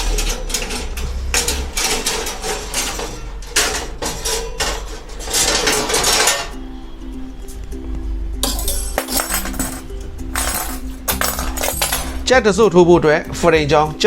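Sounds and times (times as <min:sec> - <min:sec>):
metal baking trays clattering: 0:00.2 - 0:06.5, 0:08.4 - 0:12.4.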